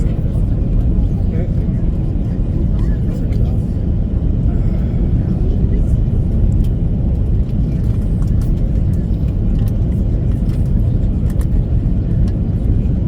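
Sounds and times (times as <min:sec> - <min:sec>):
airplane cabin rumble: 0:00.0 - 0:13.0
light rattles and clicks: 0:06.5 - 0:12.9.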